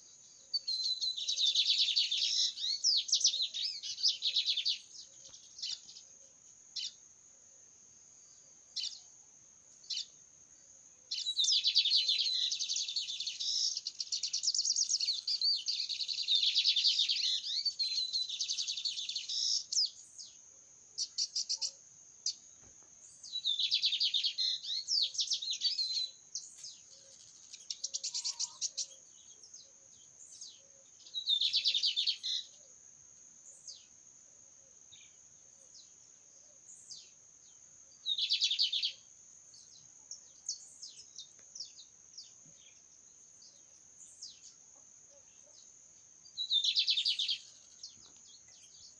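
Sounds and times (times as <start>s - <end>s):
songbird trilling: 0.6s - 6.1s, 6.8s - 7.0s, 9.8s - 10.2s, 11.1s - 20.4s, 23.1s - 32.7s, 38.0s - 39.1s, 46.4s - 48.9s.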